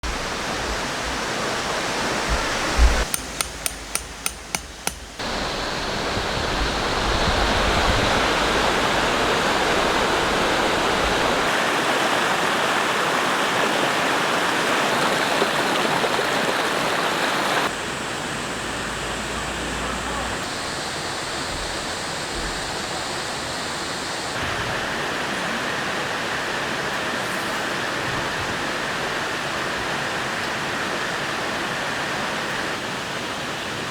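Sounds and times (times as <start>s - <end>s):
rushing mountain stream: 0.0s - 33.9s
sharp ticks: 3.0s - 5.2s.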